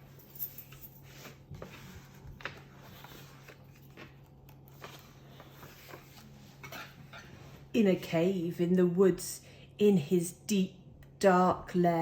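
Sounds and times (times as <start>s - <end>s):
low steady hum: 0.0s - 12.0s
paper pages rustling: 1.0s - 6.6s.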